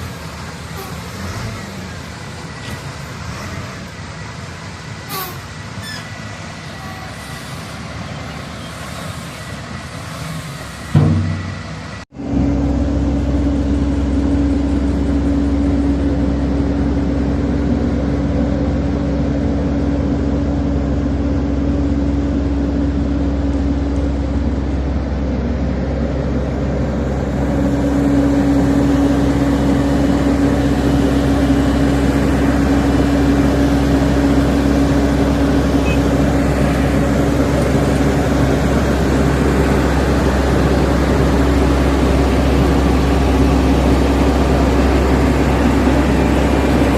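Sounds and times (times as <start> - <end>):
heavy diesel engine running: 0.0 - 46.9.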